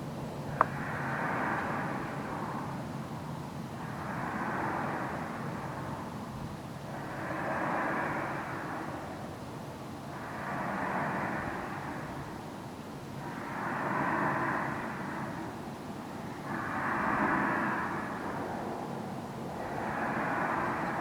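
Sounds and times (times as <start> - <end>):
distant roaring noise: 13.2 - 21.0.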